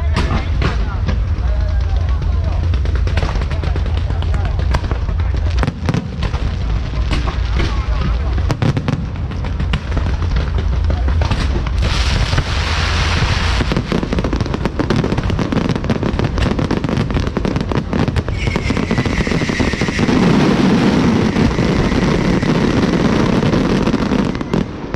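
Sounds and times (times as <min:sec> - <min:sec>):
fireworks crackling and banging: 0:00.0 - 0:24.9
falling whistling tone: 0:18.3 - 0:22.5.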